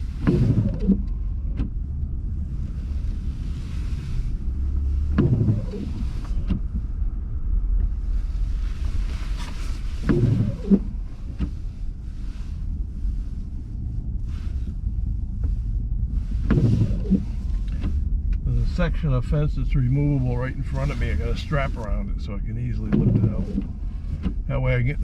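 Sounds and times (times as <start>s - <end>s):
vehicle engine rumble: 0.0s - 25.0s
low voice-like sounds: 18.4s - 23.6s.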